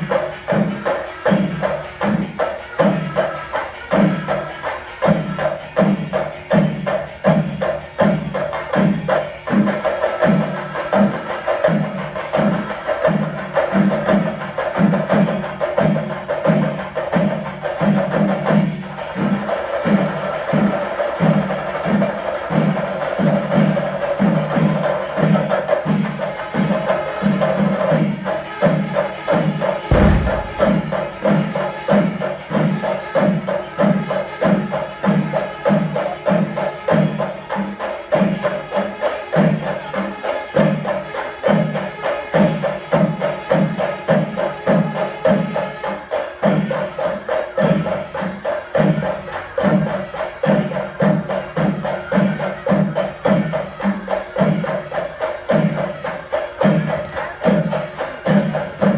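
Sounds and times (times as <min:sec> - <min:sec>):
drums beating steady rhythm: 0:00.0 - 0:58.9
low thud: 0:29.9 - 0:31.4
cymbals clashing: 0:29.9 - 0:32.1.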